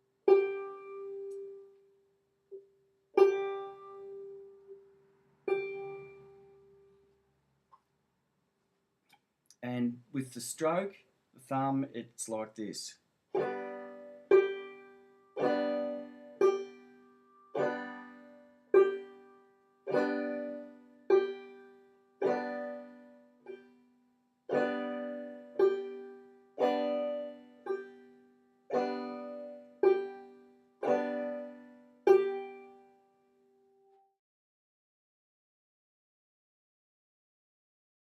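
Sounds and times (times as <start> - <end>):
banjo played clawhammer style: 0.3 - 1.6, 3.2 - 4.4, 5.5 - 6.5, 13.3 - 23.7, 24.5 - 33.0.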